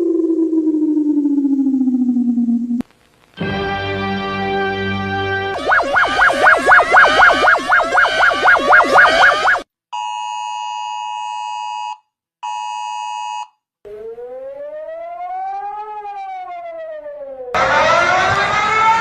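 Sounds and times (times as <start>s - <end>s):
loud rising siren: 0.0s - 2.8s, 5.5s - 9.6s, 13.9s - 19.0s
rising and falling siren tone: 0.0s - 2.8s, 5.6s - 9.6s, 13.9s - 19.0s
multi-pitch alert tone: 5.6s - 9.6s.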